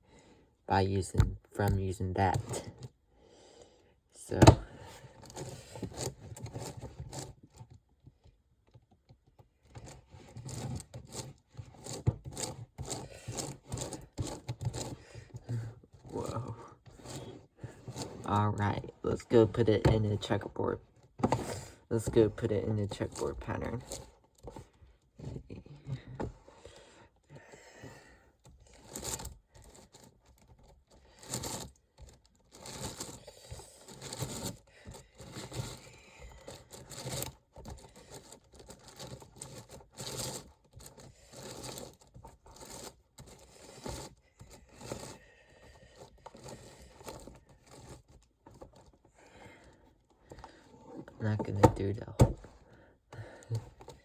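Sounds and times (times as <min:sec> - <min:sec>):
plastic puzzle cube pieces scraping: 0:04.4 - 0:07.8, 0:09.6 - 0:27.0, 0:27.6 - 0:54.0.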